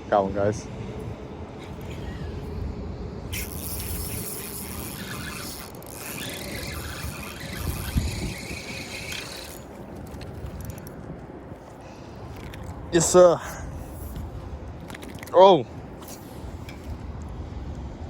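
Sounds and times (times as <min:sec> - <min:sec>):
fishing reel whirring and ratcheting: 0:03.3 - 0:11.0.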